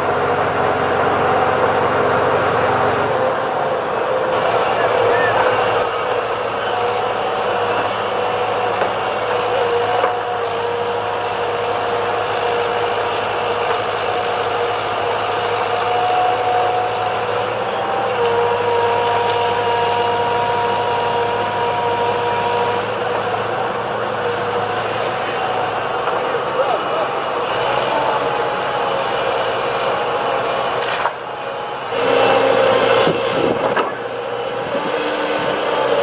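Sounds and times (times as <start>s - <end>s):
heavy diesel machinery running: 0.0s - 36.0s
whine shifting in pitch: 15.6s - 36.0s.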